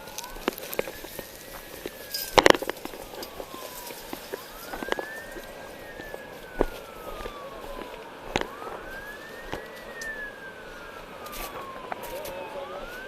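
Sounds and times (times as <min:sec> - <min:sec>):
siren wailing: 0:00.0 - 0:13.0.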